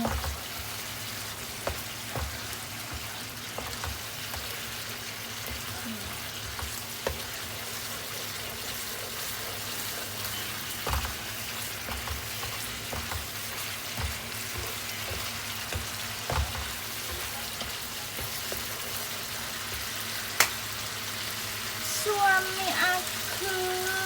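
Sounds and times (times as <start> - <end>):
spatula scraping a pan: 0.0 - 20.0
chili paste sizzling in oil: 0.0 - 24.0.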